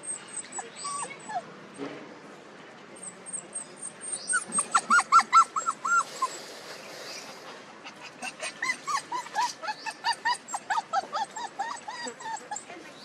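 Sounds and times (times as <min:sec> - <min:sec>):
puppies whimpering and yipping: 0:00.0 - 0:01.5, 0:03.0 - 0:06.5, 0:07.9 - 0:13.0.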